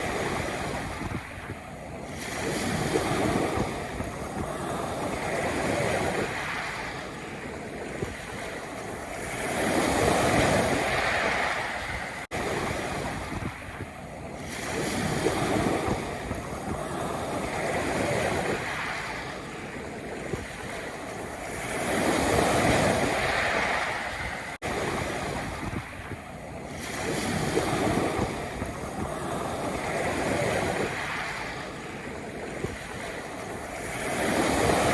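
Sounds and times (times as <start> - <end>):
waves breaking on pebble beach: 0.0 - 34.9.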